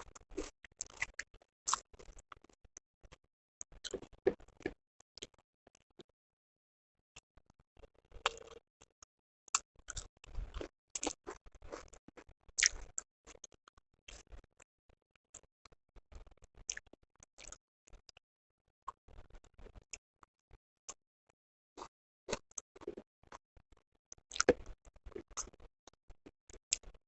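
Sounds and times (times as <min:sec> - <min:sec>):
person chewing and mouth smacks: 0:00.0 - 0:02.6, 0:03.8 - 0:05.4, 0:08.2 - 0:08.6, 0:09.5 - 0:13.4, 0:24.3 - 0:25.6.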